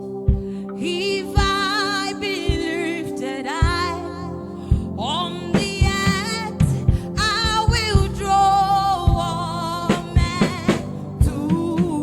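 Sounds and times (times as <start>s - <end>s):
person singing gospel: 0.0s - 12.0s
drums: 5.6s - 8.2s, 9.1s - 9.3s, 9.9s - 12.0s
steady bass line: 5.6s - 12.0s.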